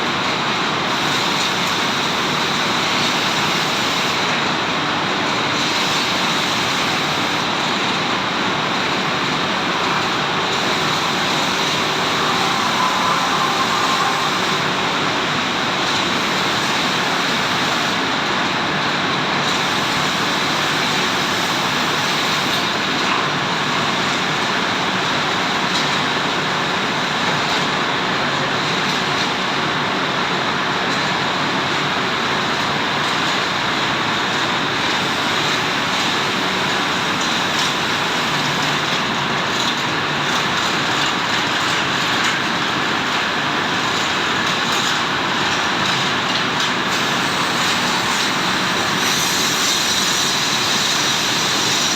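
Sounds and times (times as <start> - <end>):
cnc machine running: 5.5 - 18.0.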